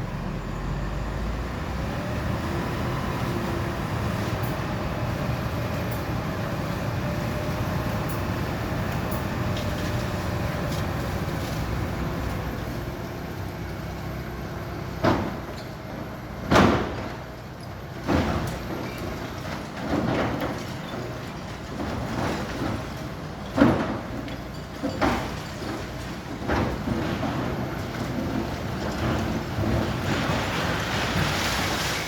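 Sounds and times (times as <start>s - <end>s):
structure crashing apart: 18.0s - 32.0s.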